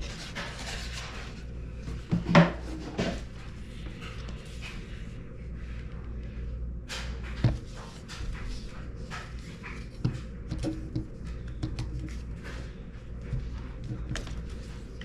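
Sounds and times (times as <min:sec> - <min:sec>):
knocks and handling sounds: 0:06.9 - 0:15.0.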